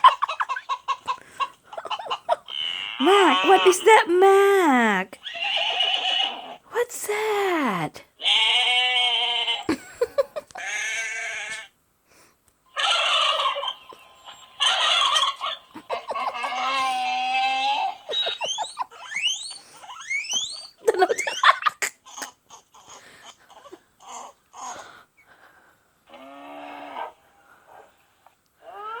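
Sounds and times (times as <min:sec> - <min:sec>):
drawn-out animal calls: 0:02.3 - 0:03.8, 0:04.5 - 0:06.6, 0:12.8 - 0:21.6.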